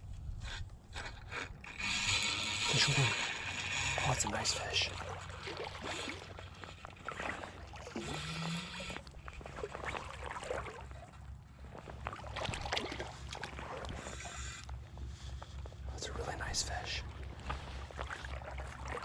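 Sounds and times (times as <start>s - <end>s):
fish splashing: 4.6s - 14.6s.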